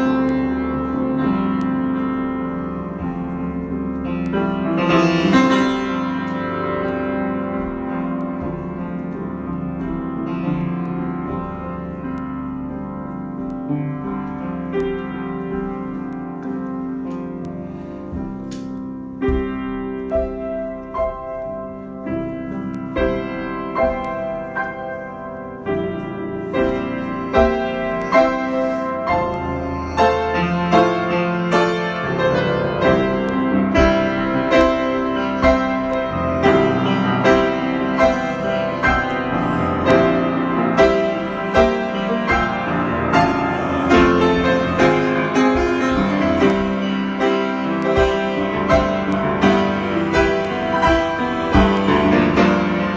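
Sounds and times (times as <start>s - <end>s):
solo piano improvisation: 0.0s - 52.9s.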